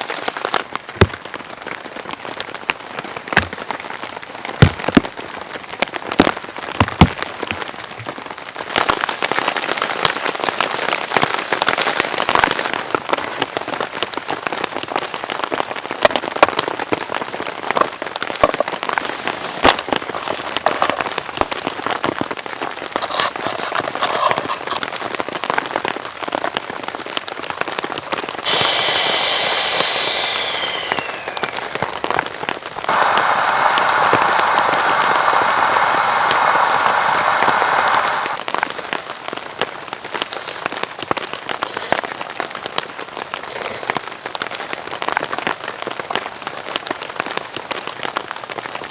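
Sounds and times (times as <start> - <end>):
heavy rain falling: 0.0 - 48.9
steady hiss: 28.4 - 38.4.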